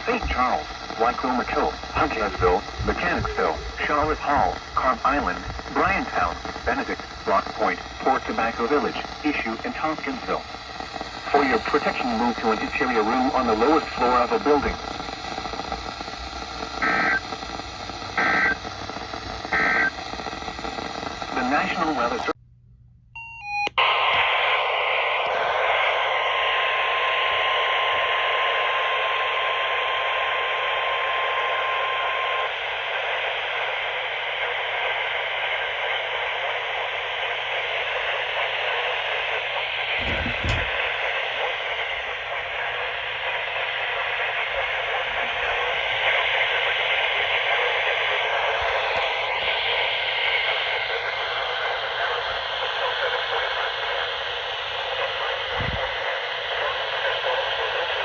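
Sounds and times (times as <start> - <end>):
radio static hiss: 0.0 - 22.4, 23.7 - 58.0
low thump: 40.0 - 40.7.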